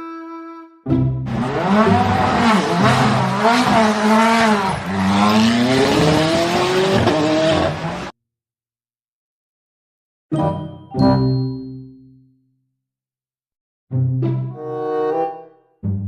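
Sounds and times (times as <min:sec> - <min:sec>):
race car engine revving: 0:01.3 - 0:08.1.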